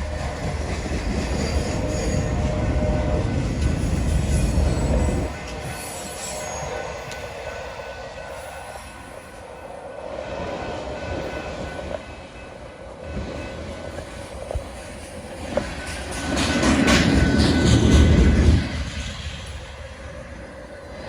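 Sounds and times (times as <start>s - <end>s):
freight train rolling on rails: 0.0s - 21.0s
wheel squeal: 0.2s - 7.3s.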